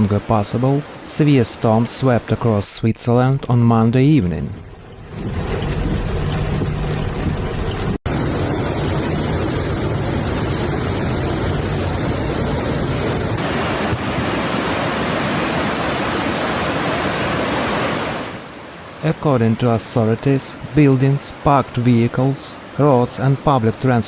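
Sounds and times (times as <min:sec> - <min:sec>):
floodwater rushing: 0:00.0 - 0:02.6, 0:04.2 - 0:24.0
wind noise on microphone: 0:04.4 - 0:16.5.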